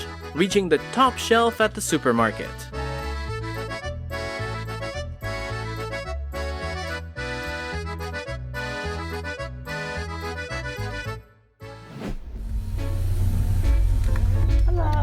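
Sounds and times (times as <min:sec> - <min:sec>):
accordion music with oom-pah bass: 0:00.0 - 0:15.0.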